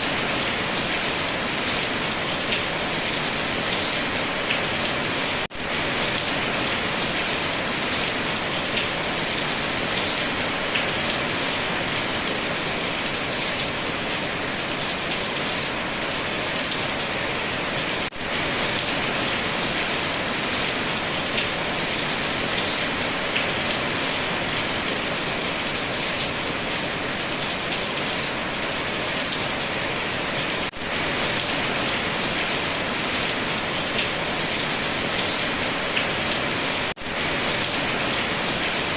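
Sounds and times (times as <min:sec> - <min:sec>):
heavy rain falling: 0:00.0 - 0:38.9.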